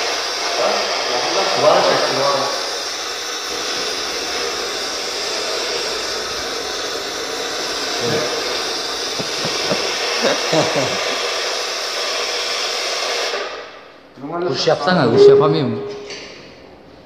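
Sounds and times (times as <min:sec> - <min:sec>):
electronic welding arc hiss: 0:00.0 - 0:13.4.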